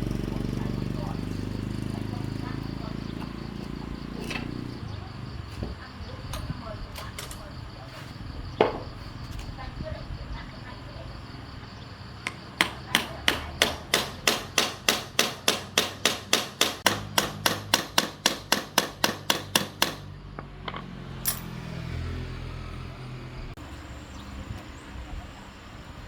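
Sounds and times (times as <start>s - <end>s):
hammer striking: 12.2s - 20.1s.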